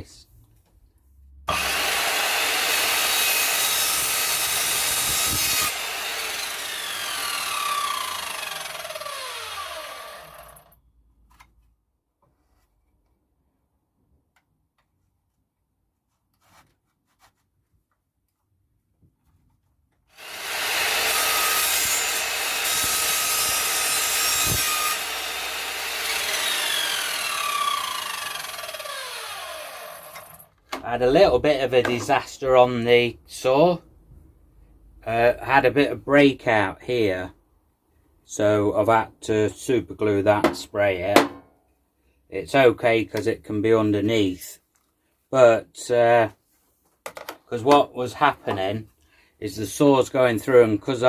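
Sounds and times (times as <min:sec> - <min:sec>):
mitre saw cutting pipe: 0:01.5 - 0:10.7, 0:20.1 - 0:30.5
saw blade spinning down whine: 0:01.5 - 0:10.7, 0:20.2 - 0:30.4.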